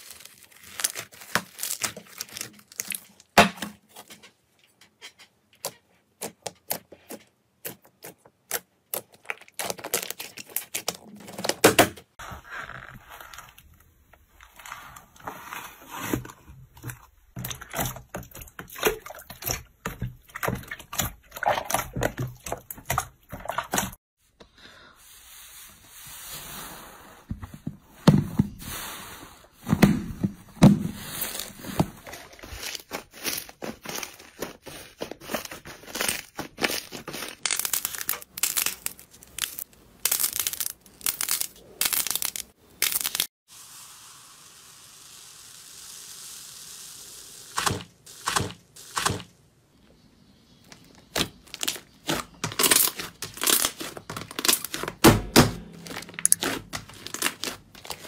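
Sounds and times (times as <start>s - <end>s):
slime crackling and popping: 35.3s - 43.3s, 51.1s - 55.0s, 55.8s - 58.0s.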